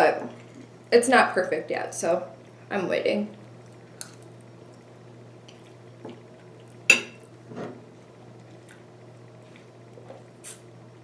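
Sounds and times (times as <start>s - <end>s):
low steady hum: 0.0s - 11.0s
utensil clinking against dish: 6.9s - 7.2s.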